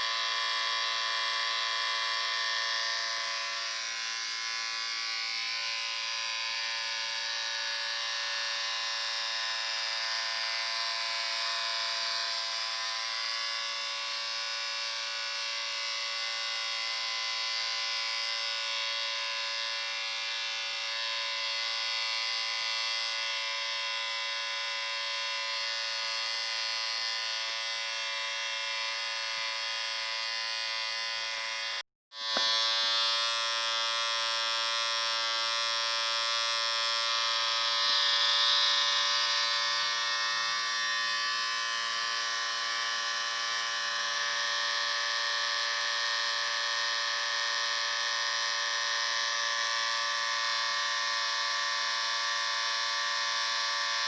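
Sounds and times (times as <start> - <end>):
electric shaver buzzing: 0.0 - 54.0.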